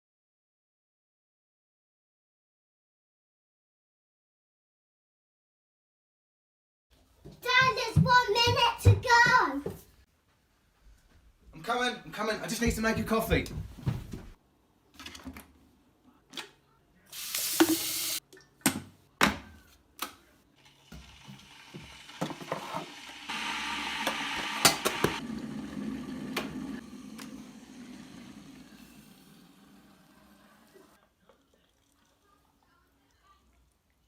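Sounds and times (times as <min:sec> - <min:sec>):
running or pouring water: 0:17.1 - 0:18.2, 0:20.6 - 0:34.0.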